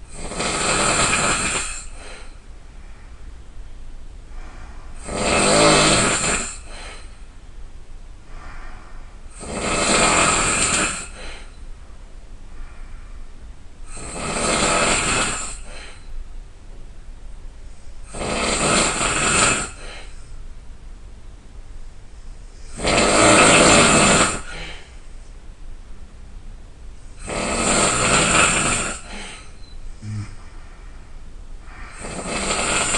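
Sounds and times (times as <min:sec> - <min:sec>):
person snoring loudly: 0:00.1 - 0:02.2, 0:05.0 - 0:07.0, 0:09.4 - 0:11.5, 0:13.9 - 0:16.0, 0:18.1 - 0:20.1, 0:22.7 - 0:24.9, 0:27.2 - 0:30.4, 0:31.8 - 0:32.9.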